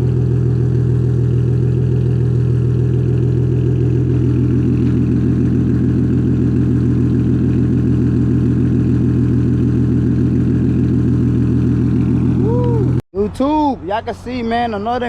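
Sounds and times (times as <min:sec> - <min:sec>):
car engine running: 0:00.0 - 0:15.0.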